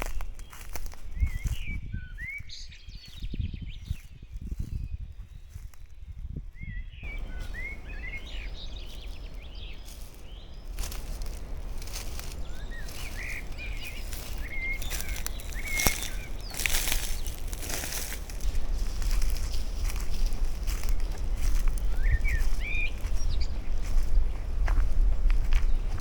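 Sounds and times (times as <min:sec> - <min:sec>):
songbirds chirping and singing: 0:00.0 - 0:26.0
low outdoor rumble: 0:07.0 - 0:22.5.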